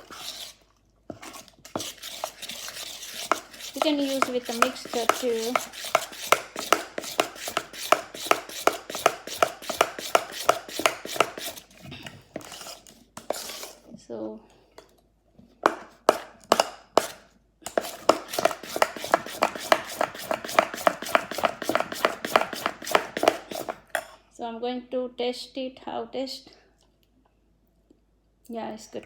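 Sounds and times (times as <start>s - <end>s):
utensil beating batter in bowl: 0.0s - 11.8s, 12.4s - 13.8s, 15.6s - 24.1s.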